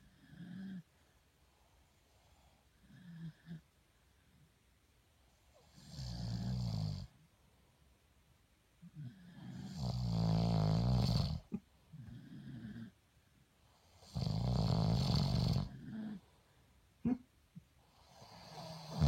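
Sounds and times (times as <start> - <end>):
person snoring: 8.9 - 12.9, 14.0 - 16.3, 18.0 - 19.0.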